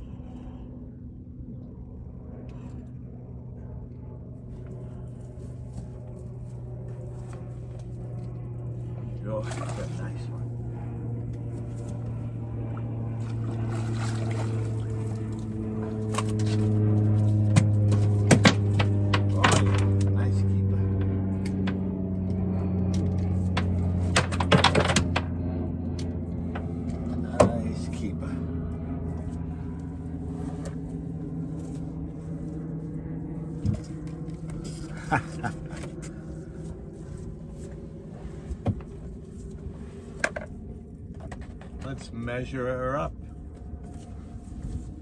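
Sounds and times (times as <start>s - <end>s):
boat engine humming: 0.0s - 45.0s
water sounds: 9.4s - 10.6s, 12.6s - 17.2s.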